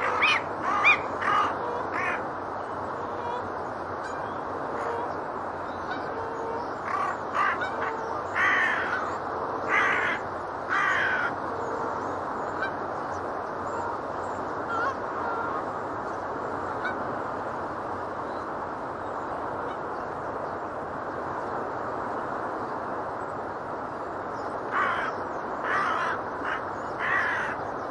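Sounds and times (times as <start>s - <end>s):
seagulls and geese calling: 0.0s - 2.2s, 3.0s - 12.8s, 14.6s - 15.7s, 24.7s - 27.6s
steady background noise: 0.0s - 27.9s.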